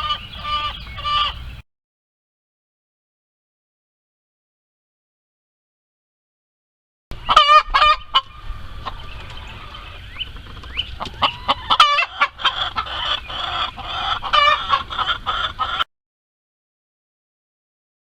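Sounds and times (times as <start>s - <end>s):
chickens clucking: 0.0s - 1.6s, 7.1s - 15.9s
chickens squawking: 0.0s - 1.6s, 7.1s - 15.9s.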